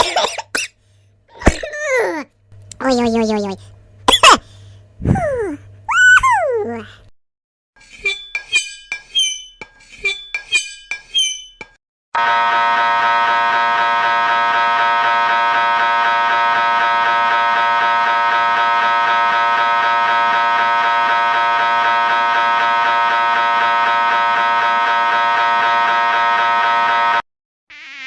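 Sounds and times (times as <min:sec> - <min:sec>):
electric buzzer: 0:12.2 - 0:28.0.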